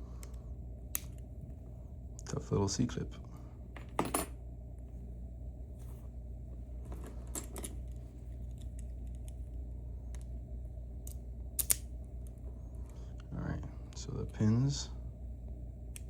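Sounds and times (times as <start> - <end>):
steady low hum: 0.0 - 16.0
metallic clicks of lock parts: 11.0 - 11.9.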